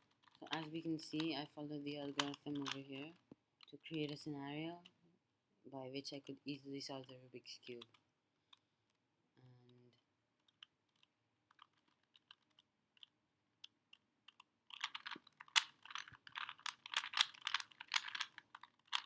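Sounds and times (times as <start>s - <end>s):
puzzle cube clicking and rattling: 0.0s - 4.3s, 10.4s - 19.0s.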